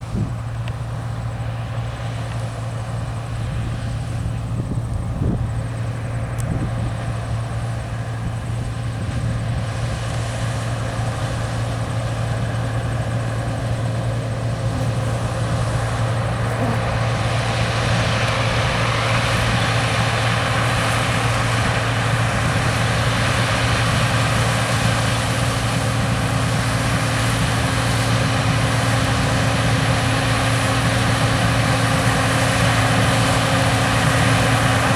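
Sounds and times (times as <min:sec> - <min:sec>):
combine harvester engine drone: 0:00.0 - 0:34.9
broad rushing noise: 0:14.5 - 0:17.4.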